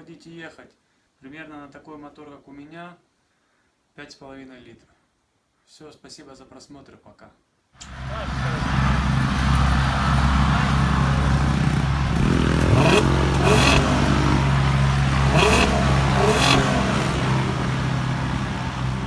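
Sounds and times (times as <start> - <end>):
car engine running: 7.8 - 19.0.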